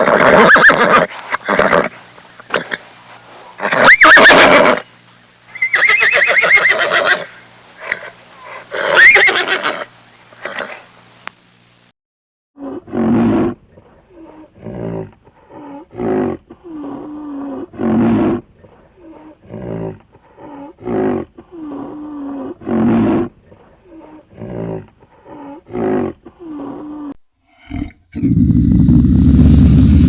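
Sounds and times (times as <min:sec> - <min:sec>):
big cat roaring: 0:14.6 - 0:18.4, 0:24.1 - 0:27.0, 0:27.6 - 0:30.0.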